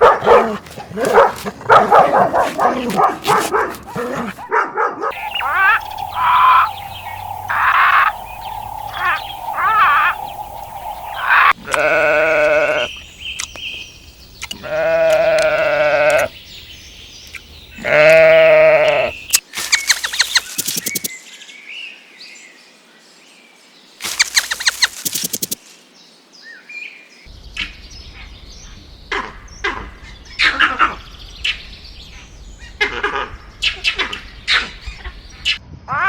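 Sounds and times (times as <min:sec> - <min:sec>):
steady hum: 0:05.2 - 0:11.6
farm animals bleating: 0:11.6 - 0:12.9, 0:14.5 - 0:16.3, 0:17.8 - 0:19.2.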